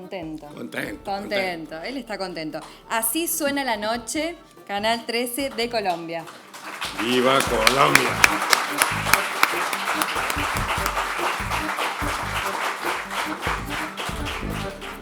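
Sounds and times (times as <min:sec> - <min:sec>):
music with a steady beat: 0:00.0 - 0:15.0
audience applause: 0:05.5 - 0:15.0.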